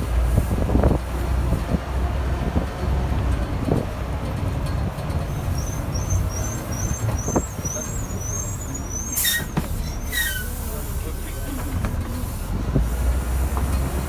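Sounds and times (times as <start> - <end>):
heavy road traffic rumble: 0.0 - 14.0
sharp hiss: 7.6 - 13.6.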